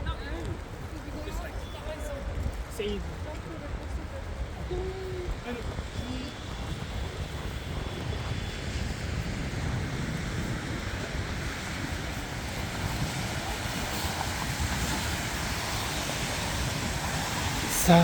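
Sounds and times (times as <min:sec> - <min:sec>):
wind buffeting microphone: 0:00.0 - 0:18.0
rushing hiss: 0:11.7 - 0:18.0.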